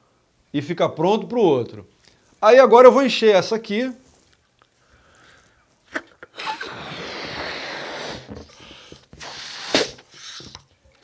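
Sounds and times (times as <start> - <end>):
breath blowing up balloon: 5.9 - 10.7.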